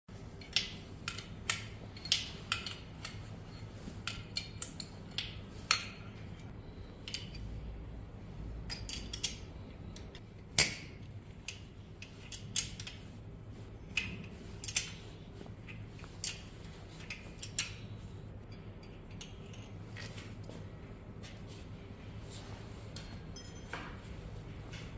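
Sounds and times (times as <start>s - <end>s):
low steady hum: 0.1s - 24.9s
metal tools clinking: 22.9s - 24.0s.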